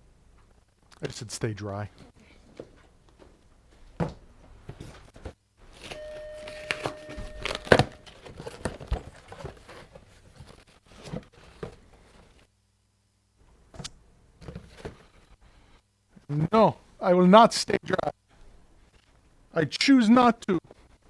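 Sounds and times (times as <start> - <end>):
cables rustling and crinkling: 1.8 - 12.5
short steady tone: 6.0 - 8.2.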